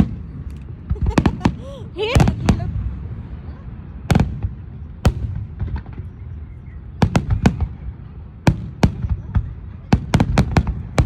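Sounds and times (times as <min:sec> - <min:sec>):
fireworks crackles: 0:00.0 - 0:06.2
fireworks bangs: 0:00.0 - 0:06.4, 0:07.0 - 0:11.0.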